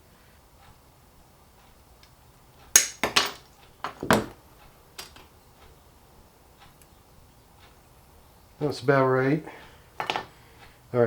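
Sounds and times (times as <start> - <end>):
sharp snaps and clinks: 2.8 - 4.2.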